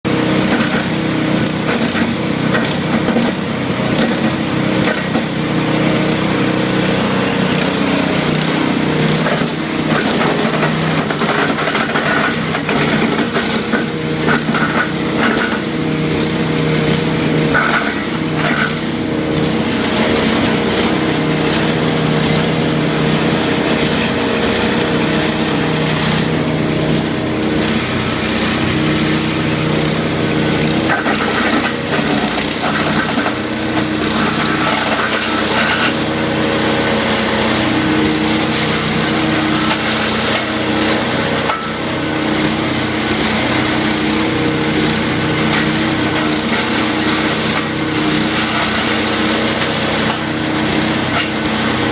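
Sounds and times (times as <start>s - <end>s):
wood chipper engine running: 0.0s - 51.9s.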